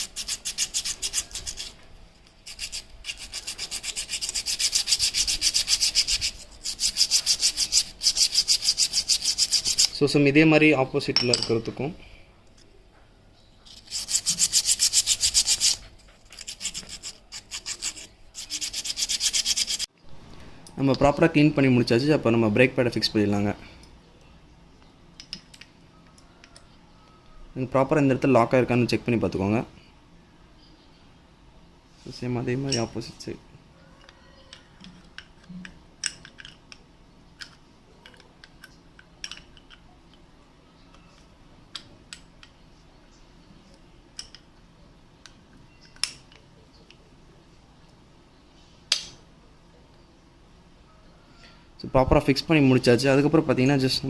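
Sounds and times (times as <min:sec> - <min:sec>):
brake pad rubbing on sandpaper: 0:13.7 - 0:19.9.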